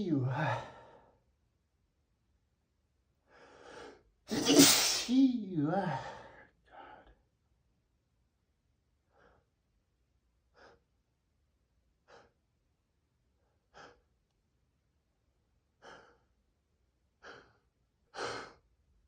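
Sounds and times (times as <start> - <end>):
man sneezing stifled: 4.3 - 6.2.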